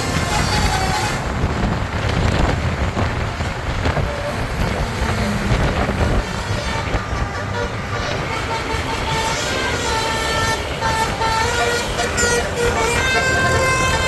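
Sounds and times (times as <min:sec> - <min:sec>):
engine and road rumble: 0:00.0 - 0:14.0
wind buffeting microphone: 0:00.0 - 0:14.0.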